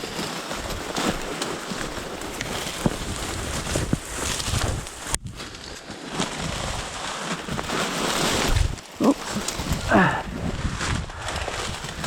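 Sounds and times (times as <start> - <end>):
dry reeds rustling and crackling: 0.0 - 12.0
wind buffeting microphone: 2.6 - 5.5, 8.4 - 12.0.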